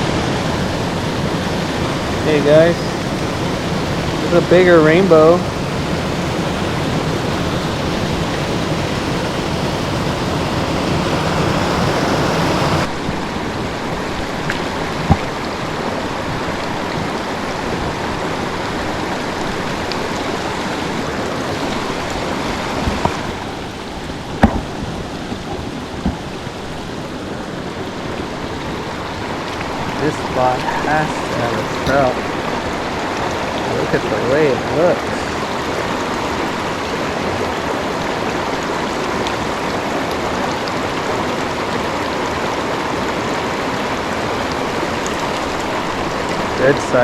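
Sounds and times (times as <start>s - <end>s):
creek water running: 0.0s - 47.0s.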